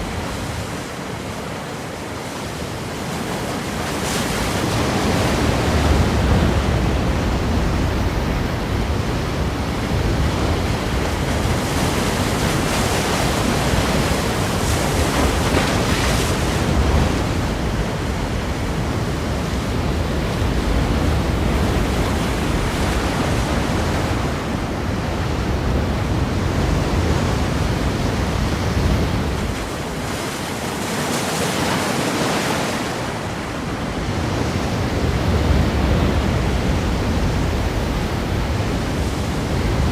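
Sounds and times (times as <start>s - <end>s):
waves breaking against rocks: 29.2s - 34.2s.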